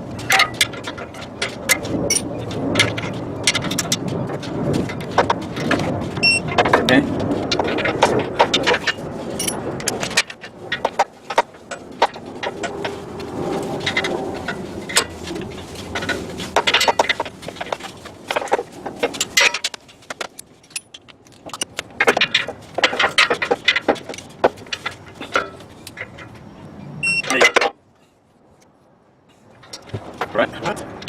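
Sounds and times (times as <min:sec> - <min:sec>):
metal tools clinking: 0:02.1 - 0:04.0, 0:08.7 - 0:10.4, 0:20.6 - 0:26.3.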